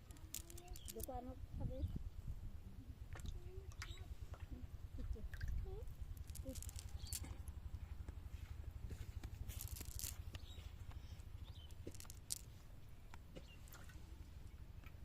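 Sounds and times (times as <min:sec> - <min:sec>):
rustling: 0:00.0 - 0:01.2, 0:05.9 - 0:12.8
steady low rumble: 0:04.1 - 0:13.2.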